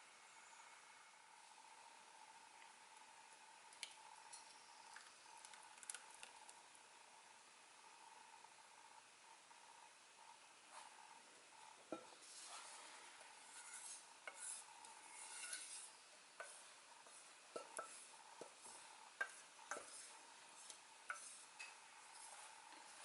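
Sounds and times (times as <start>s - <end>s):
faint steady hum: 0.0s - 23.0s
kitchenware clinking and scraping: 11.9s - 16.6s.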